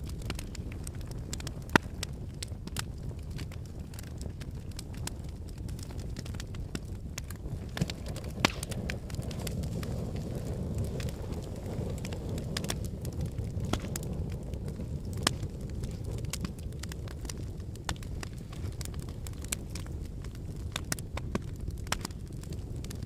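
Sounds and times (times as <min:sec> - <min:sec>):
low rumble of flames: 0:00.0 - 0:23.0
wood fire crackling and popping: 0:00.0 - 0:23.0.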